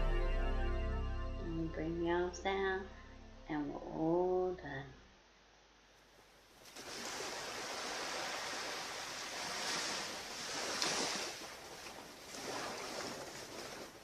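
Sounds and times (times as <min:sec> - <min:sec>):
ocean surf breaking: 0:06.7 - 0:14.0.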